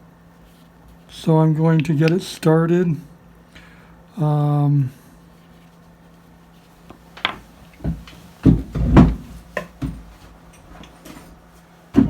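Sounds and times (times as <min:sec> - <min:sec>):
knocks and clunks on workbench: 0:06.9 - 0:10.2.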